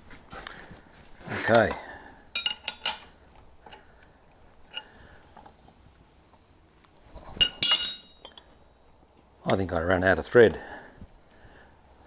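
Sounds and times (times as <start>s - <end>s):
metal hardware clicking: 2.4s - 3.1s, 7.4s - 8.5s.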